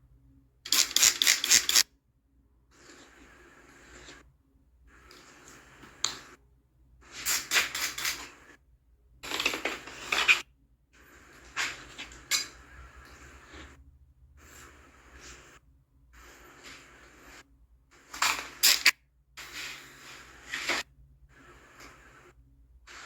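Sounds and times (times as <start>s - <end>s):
razor blade scraping glass: 0.7s - 1.8s, 7.3s - 8.4s, 9.3s - 10.5s, 18.2s - 19.7s.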